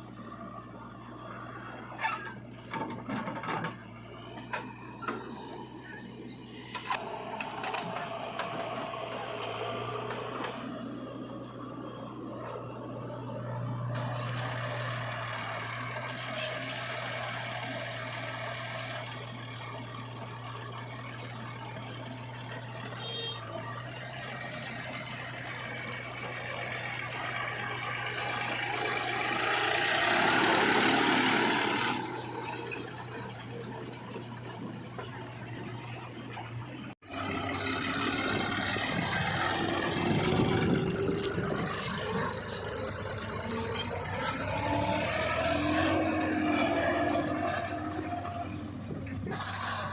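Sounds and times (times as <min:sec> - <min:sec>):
heavy diesel engine running: 0:00.0 - 0:49.9
harsh machine sound: 0:37.0 - 0:46.1.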